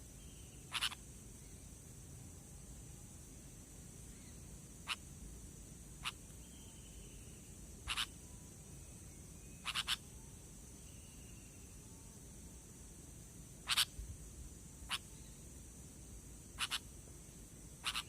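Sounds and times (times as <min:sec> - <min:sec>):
steady high hiss: 0:00.0 - 0:18.0
bird short sharp calls: 0:00.6 - 0:01.0, 0:07.8 - 0:08.1, 0:09.6 - 0:10.0, 0:13.6 - 0:14.0, 0:16.6 - 0:16.8, 0:17.8 - 0:18.0.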